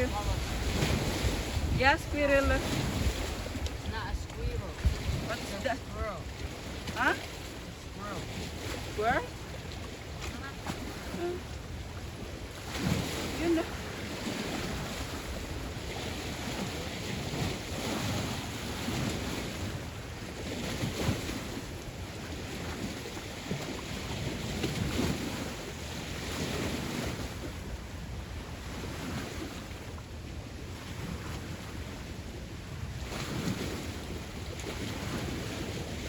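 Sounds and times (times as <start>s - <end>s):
wind buffeting microphone: 0.0s - 36.0s.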